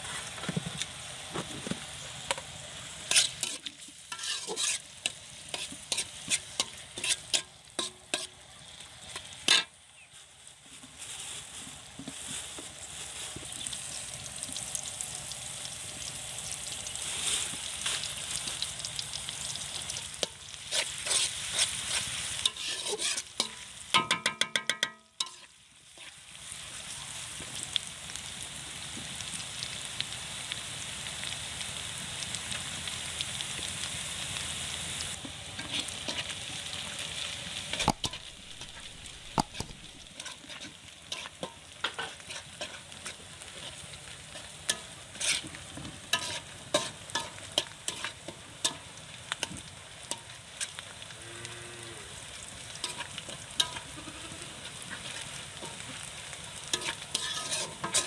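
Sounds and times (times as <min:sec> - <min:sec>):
food sizzling in oil: 0:00.0 - 0:58.0
spatula scraping pan: 0:03.0 - 0:08.3, 0:09.4 - 0:09.7, 0:20.2 - 0:26.2, 0:35.6 - 0:36.4, 0:37.7 - 0:48.8, 0:52.8 - 0:56.1, 0:56.7 - 0:58.0.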